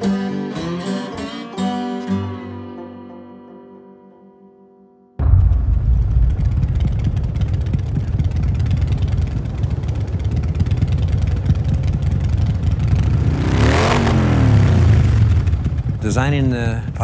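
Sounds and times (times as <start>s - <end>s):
motorcycle engine rumbling: 5.2s - 17.0s.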